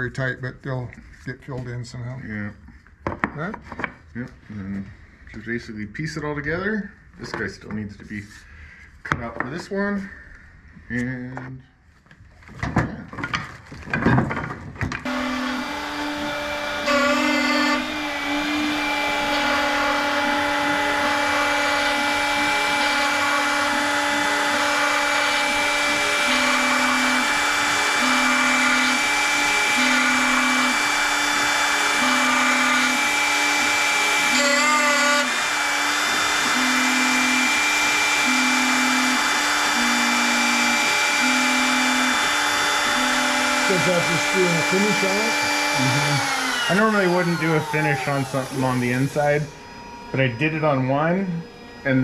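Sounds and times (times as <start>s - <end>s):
cnc router spindle cutting wood: 15.0s - 52.0s.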